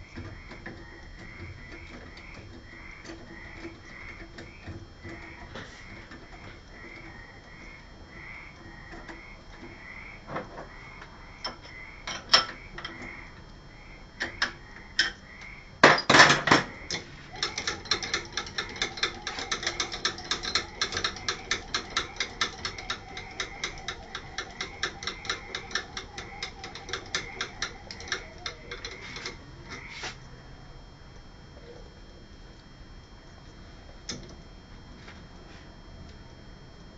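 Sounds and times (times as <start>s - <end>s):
handwheel cranking clicks: 16.9s - 29.8s
metal handwheel clicks: 17.4s - 29.4s.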